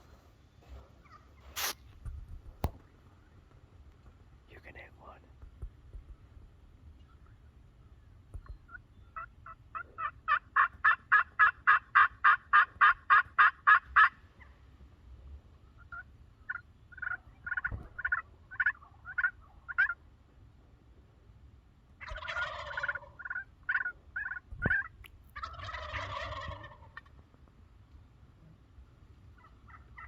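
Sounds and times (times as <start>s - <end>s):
turkey yelping: 9.2s - 14.1s, 15.8s - 20.0s, 22.0s - 27.2s.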